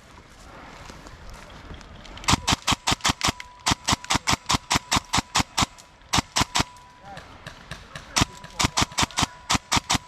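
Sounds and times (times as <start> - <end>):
airsoft rifle rapid fire: 2.3 - 6.7, 8.0 - 10.0.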